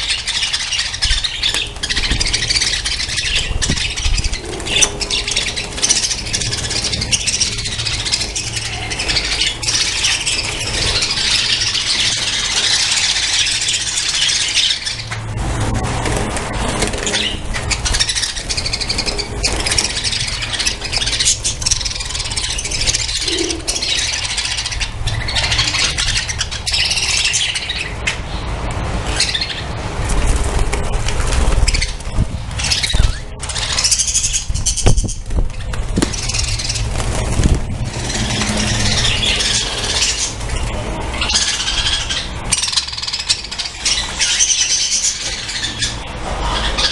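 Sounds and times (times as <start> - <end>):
budgerigars chattering and chirping: 0.0 - 46.9.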